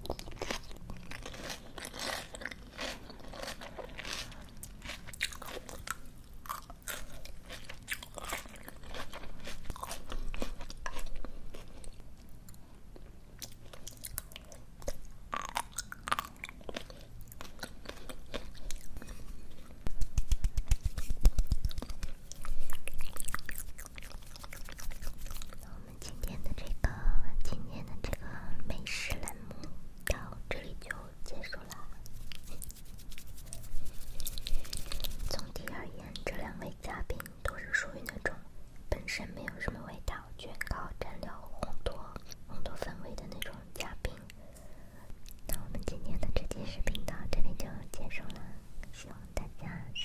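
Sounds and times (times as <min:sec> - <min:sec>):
chewing crunchy raw greens: 0:00.0 - 0:12.6, 0:13.4 - 0:25.7, 0:31.7 - 0:35.5.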